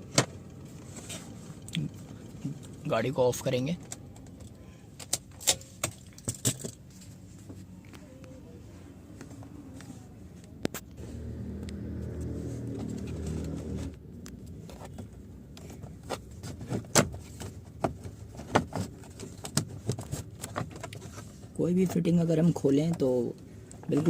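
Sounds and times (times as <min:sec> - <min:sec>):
car engine running: 0:00.0 - 0:04.6, 0:09.1 - 0:21.5.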